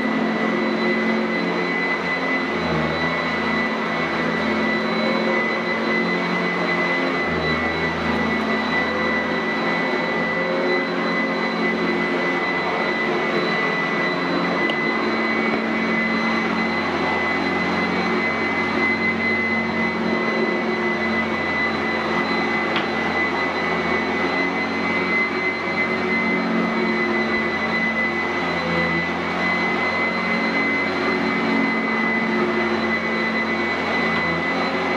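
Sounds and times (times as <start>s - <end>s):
upright vacuum running over carpet: 0.0s - 34.9s.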